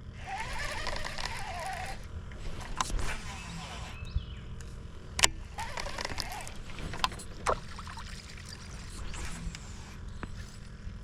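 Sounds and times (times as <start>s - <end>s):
water splashing around boat: 5.5s - 9.7s.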